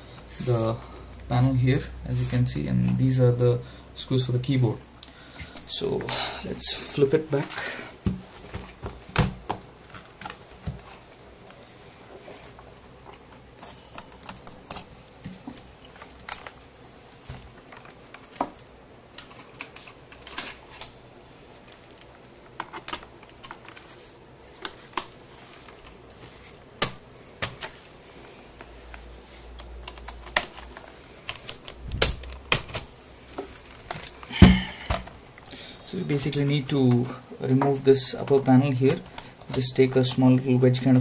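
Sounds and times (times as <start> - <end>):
plastic laptop casing clicks: 26.8 - 27.8, 29.6 - 32.9.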